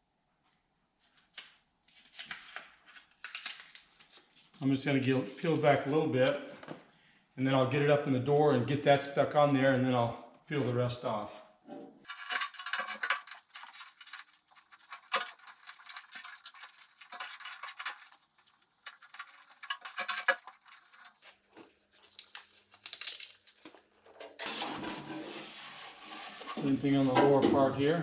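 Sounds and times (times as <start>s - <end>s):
foil mat crinkling and crackling: 1.2s - 4.6s, 12.1s - 24.5s.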